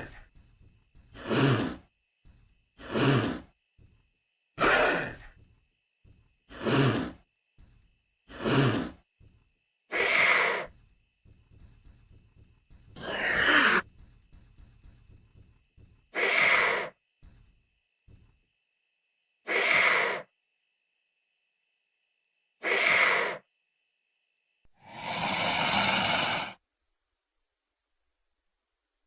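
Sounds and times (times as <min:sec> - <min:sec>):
creature breath exhales: 0:24.8 - 0:26.6.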